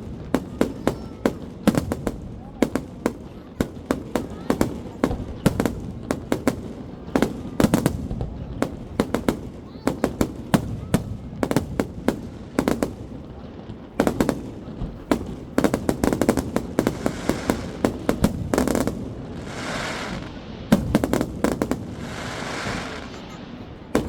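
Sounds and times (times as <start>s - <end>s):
fireworks bangs and crackling: 0.0s - 24.0s
hissing crackle: 13.3s - 24.0s.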